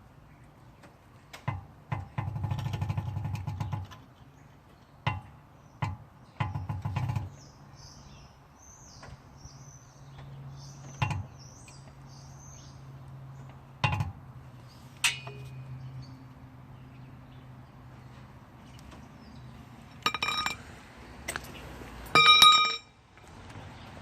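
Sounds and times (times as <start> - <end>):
sharp metallic clinks: 15.0 - 16.2, 19.9 - 20.6, 22.0 - 23.0
car jack rattling clatter: 20.0 - 20.6.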